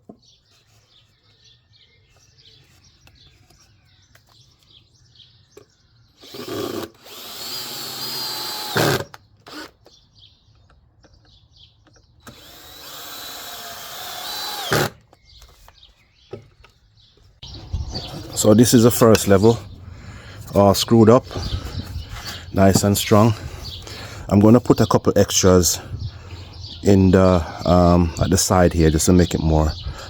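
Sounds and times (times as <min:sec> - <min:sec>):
power drill motor whining: 0:06.2 - 0:09.9, 0:12.2 - 0:15.5.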